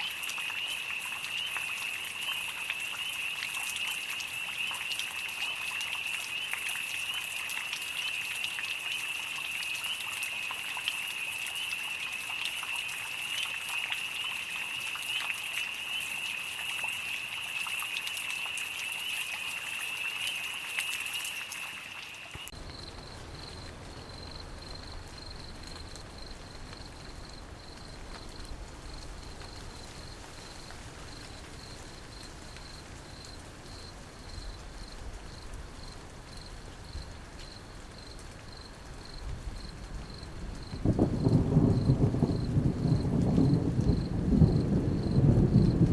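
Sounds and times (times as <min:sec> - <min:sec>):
crickets trilling: 0:00.0 - 0:45.9
rain falling: 0:00.0 - 0:45.9
pulsing cricket chirp: 0:18.4 - 0:45.9.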